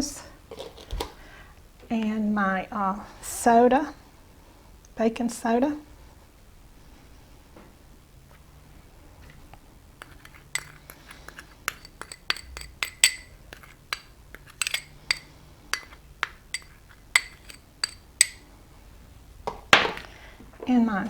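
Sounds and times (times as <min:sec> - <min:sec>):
metal spoon clinking against bowl: 0:10.0 - 0:18.4.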